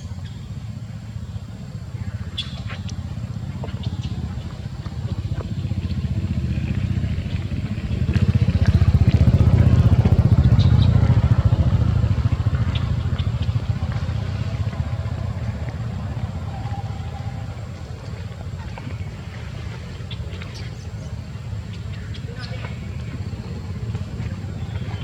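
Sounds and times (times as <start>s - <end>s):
engine low pulsing rumble: 0.0s - 25.0s.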